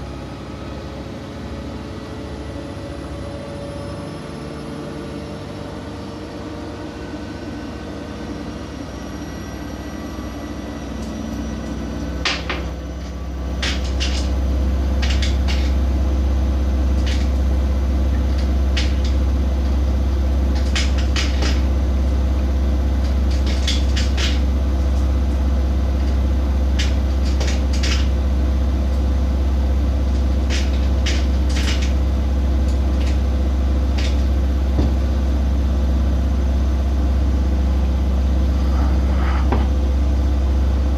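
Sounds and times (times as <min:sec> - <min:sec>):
washing machine drum spinning: 0:10.8 - 0:40.9.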